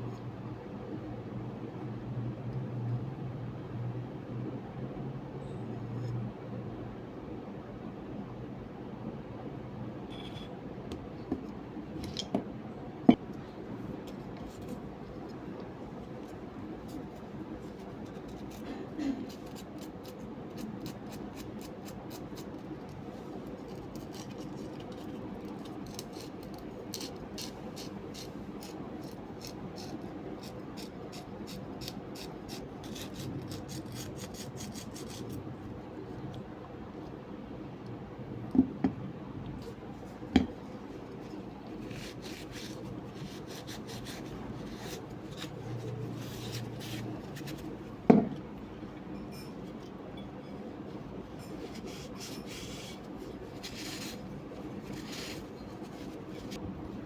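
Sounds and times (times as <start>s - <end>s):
scraping and clicking handling sounds: 39.6s - 50.0s.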